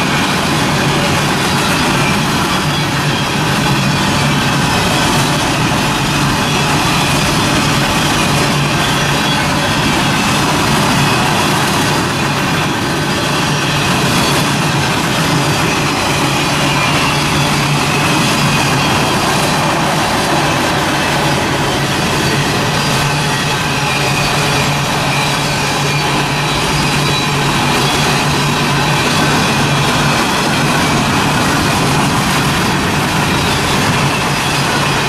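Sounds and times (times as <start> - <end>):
freight train rumbling on rails: 0.0 - 35.0.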